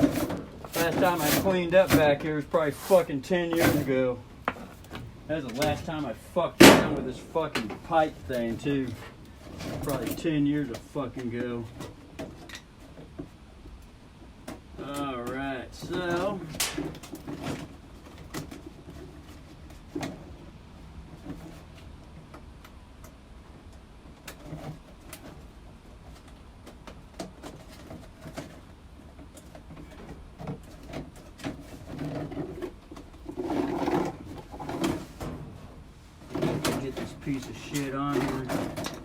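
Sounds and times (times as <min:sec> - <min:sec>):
low steady hum: 0:00.0 - 0:39.0
clicks and knocks of handling parts: 0:04.5 - 0:20.3, 0:36.3 - 0:39.0.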